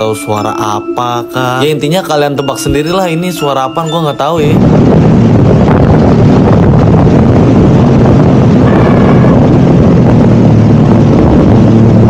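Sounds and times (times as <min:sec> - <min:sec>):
wind on microphone: 0:04.4 - 0:12.0
motorcycle engine running: 0:04.6 - 0:12.0.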